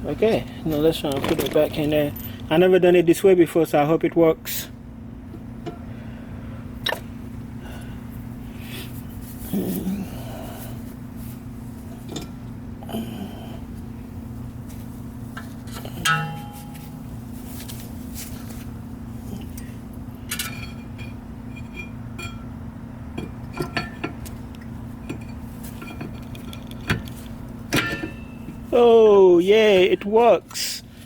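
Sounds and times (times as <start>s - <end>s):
taps on metal: 16.0s - 17.0s
ringing metal clink: 16.0s - 17.1s.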